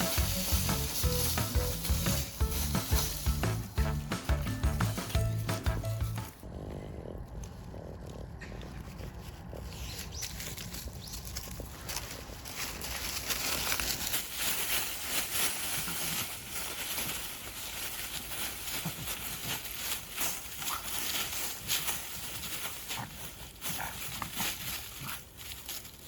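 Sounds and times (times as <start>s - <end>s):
dog sounds: 18.0s - 25.3s.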